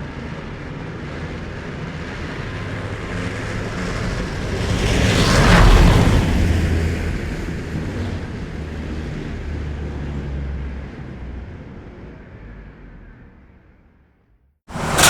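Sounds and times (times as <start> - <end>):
tracked vehicle diesel engine rumble: 14.7 - 15.0.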